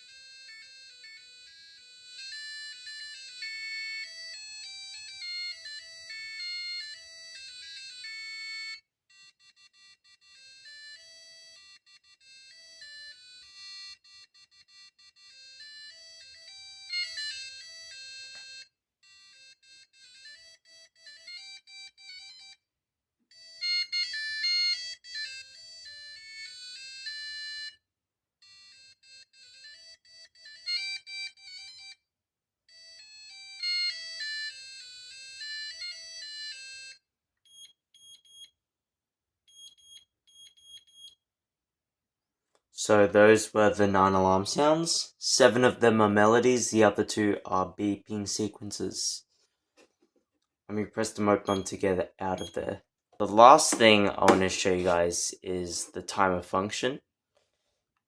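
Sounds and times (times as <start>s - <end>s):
electronic alarm melodies: 0.0s - 22.6s, 51.3s - 54.4s.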